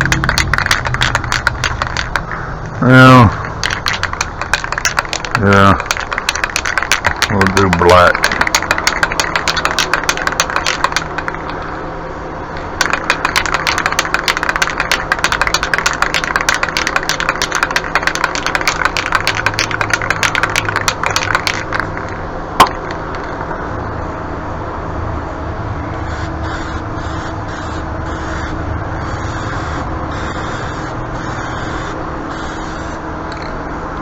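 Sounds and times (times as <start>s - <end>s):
spray can ball rattling: 0.0s - 2.4s, 3.4s - 11.8s, 12.6s - 23.6s.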